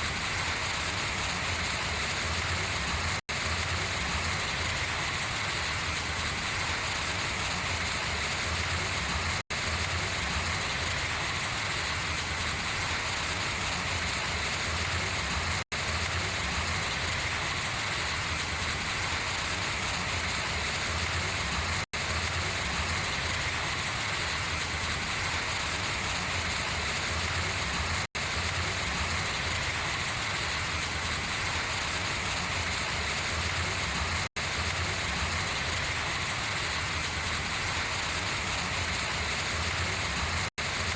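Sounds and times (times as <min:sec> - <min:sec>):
rain pattering on leaves: 0:13.7 - 0:40.9.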